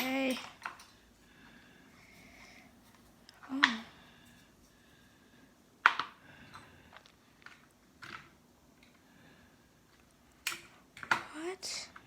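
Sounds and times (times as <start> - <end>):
small parts clicking and tapping: 0.0 - 1.1, 9.9 - 12.0.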